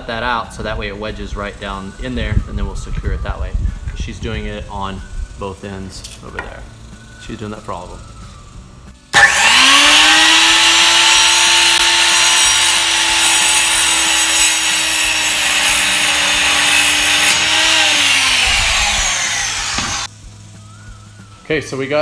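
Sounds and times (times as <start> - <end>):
electric saw cutting wood: 9.1 - 20.1.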